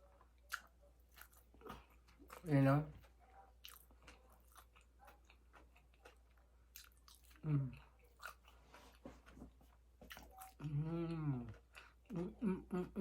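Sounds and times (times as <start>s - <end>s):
person chewing crunchy food: 0.1s - 12.4s
person humming: 10.6s - 11.5s.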